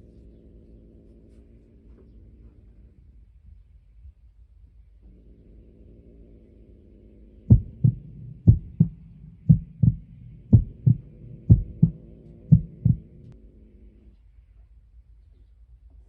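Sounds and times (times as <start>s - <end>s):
low drone: 7.2s - 13.4s
heartbeat thumps: 7.5s - 13.3s.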